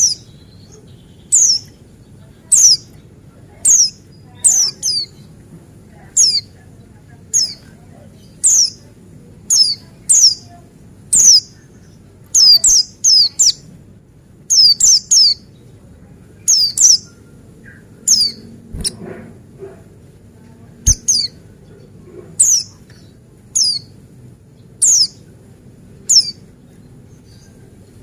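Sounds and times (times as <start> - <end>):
bird calling high sharp notes: 20.9 - 21.3.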